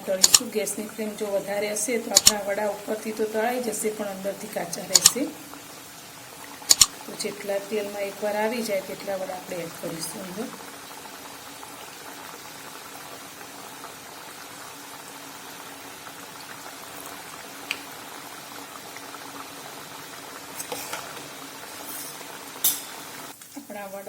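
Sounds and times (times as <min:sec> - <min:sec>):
food deep-frying in oil: 0:00.0 - 0:24.0
sharp clicks: 0:00.2 - 0:00.4, 0:02.2 - 0:02.4, 0:04.9 - 0:05.2, 0:06.7 - 0:07.0.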